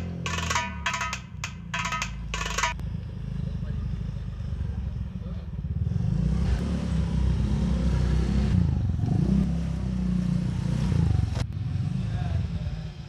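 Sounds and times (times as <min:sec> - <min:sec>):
engine revving: 0:05.8 - 0:12.3.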